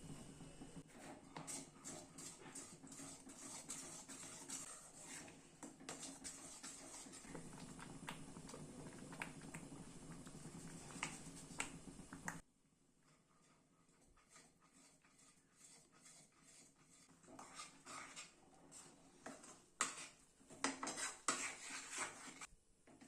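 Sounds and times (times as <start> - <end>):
steady low hum: 0.0 - 0.9, 6.7 - 12.4.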